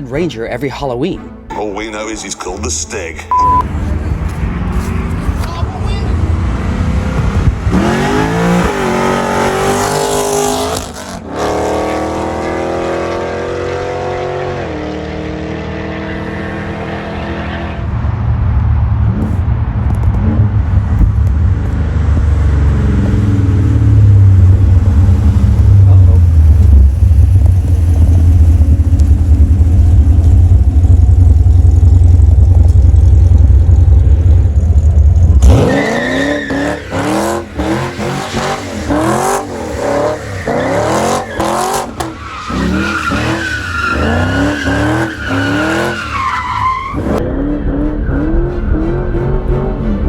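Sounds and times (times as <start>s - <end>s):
car engine rumbling and revving: 3.3s - 50.0s
tire squeal: 35.4s - 50.0s.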